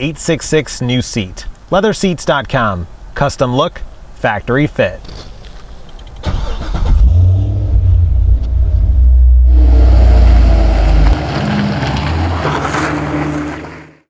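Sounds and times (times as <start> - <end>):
car engine revving: 6.2 - 14.0.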